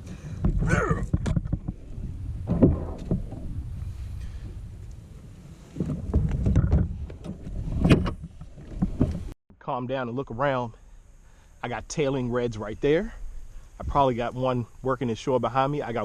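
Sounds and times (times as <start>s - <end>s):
steady low rumble: 0.0s - 8.4s.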